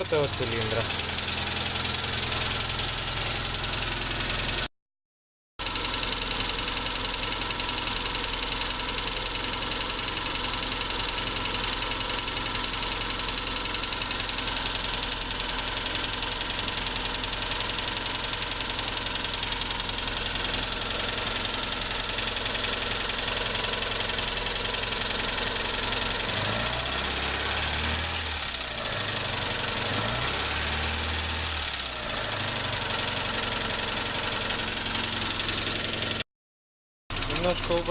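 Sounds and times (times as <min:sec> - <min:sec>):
engine running with a knock: 0:37.1 - 0:37.9.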